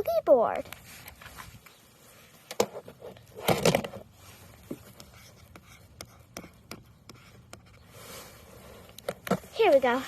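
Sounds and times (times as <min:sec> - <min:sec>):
short scraping rustle: 0:07.9 - 0:09.7.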